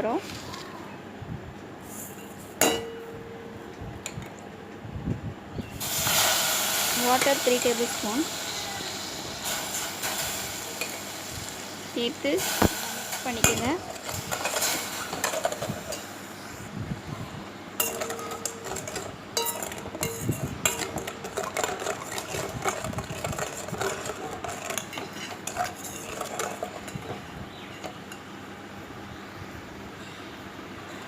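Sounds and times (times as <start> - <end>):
spoon clinking and scraping metal: 13.2 - 16.1, 17.8 - 27.9.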